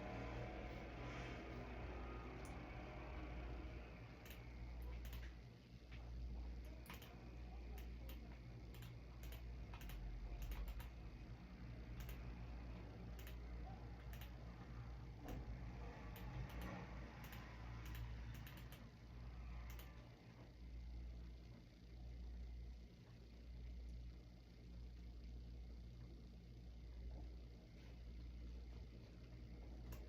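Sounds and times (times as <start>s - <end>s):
low steady hum: 0.0s - 30.0s
keyboard keys clicking: 13.2s - 13.4s, 14.0s - 14.4s.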